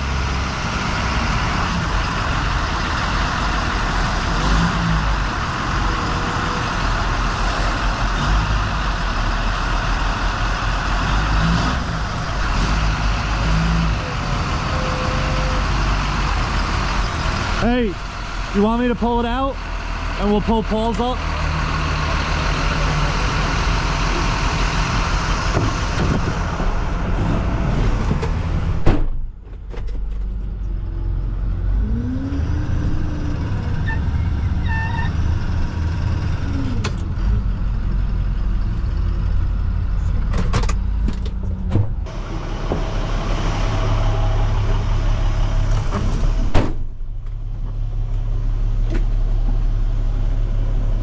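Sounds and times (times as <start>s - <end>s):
truck engines running: 0.0s - 51.0s.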